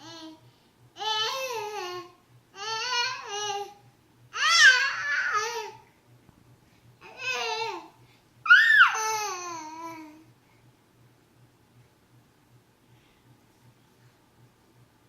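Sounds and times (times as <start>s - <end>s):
baby babbling: 4.4s - 5.8s, 8.6s - 10.2s.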